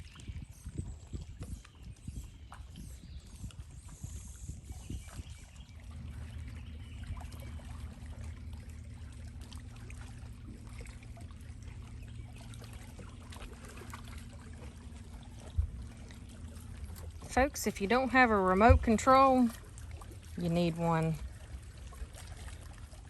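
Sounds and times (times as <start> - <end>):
low knocks and bumps: 18.5 - 19.3.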